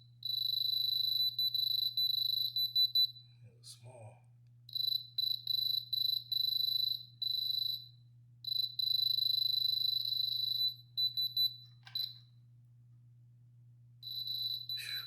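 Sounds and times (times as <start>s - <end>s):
diamond tester beeping: 0.2s - 3.2s, 4.7s - 12.3s, 14.0s - 15.0s.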